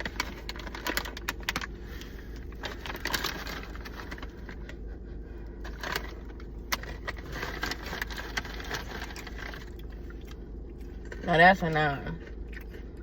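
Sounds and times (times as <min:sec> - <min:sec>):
crunching snacks: 0:00.0 - 0:04.8, 0:05.6 - 0:11.3
plastic snack bag crinkling: 0:00.0 - 0:04.8, 0:05.6 - 0:10.4
low hum: 0:00.0 - 0:13.0.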